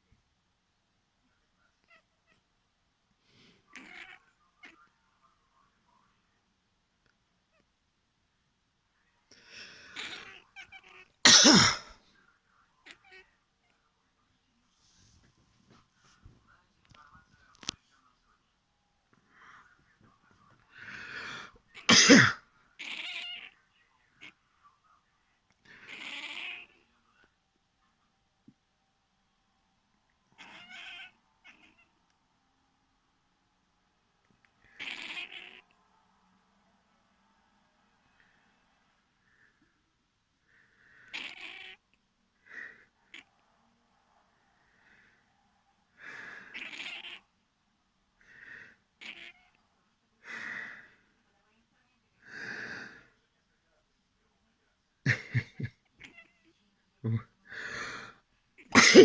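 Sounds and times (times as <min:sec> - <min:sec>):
cat meowing: 0:03.7 - 0:04.8, 0:10.0 - 0:11.2, 0:22.8 - 0:23.6, 0:25.8 - 0:26.8, 0:30.3 - 0:31.9, 0:34.6 - 0:35.7, 0:41.1 - 0:41.8, 0:46.5 - 0:47.2, 0:49.0 - 0:49.6
person sneezing: 0:11.2 - 0:12.0, 0:21.9 - 0:22.4, 0:58.8 - 0:59.0.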